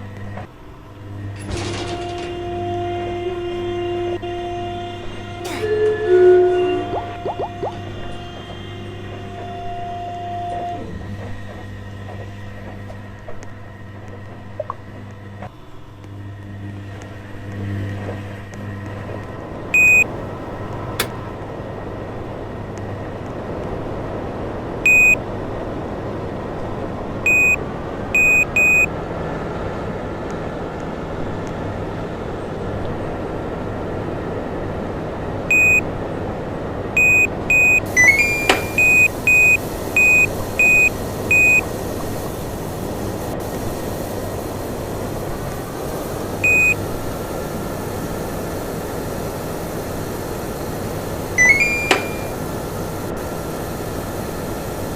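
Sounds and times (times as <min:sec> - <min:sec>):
rising chirp: 0:19.8 - 0:20.0, 0:24.9 - 0:25.2, 0:27.3 - 0:27.6, 0:28.2 - 0:28.9
control panel beeps: 0:19.8 - 0:20.1, 0:24.9 - 0:25.2, 0:27.3 - 0:27.6, 0:28.2 - 0:28.9, 0:35.5 - 0:35.8, 0:37.0 - 0:41.6, 0:46.4 - 0:46.8, 0:51.4 - 0:52.4
washing machine running: 0:36.8 - 0:53.7.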